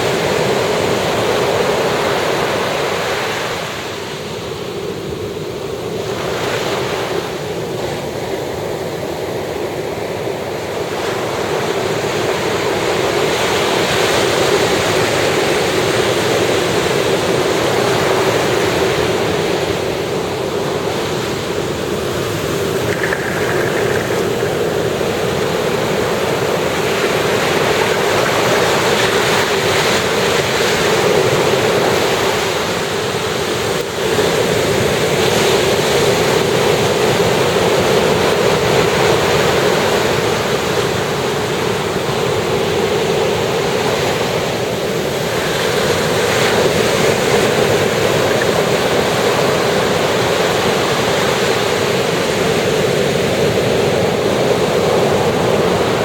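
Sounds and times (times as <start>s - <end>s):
ocean surf washing onto beach: 5.9s - 56.0s.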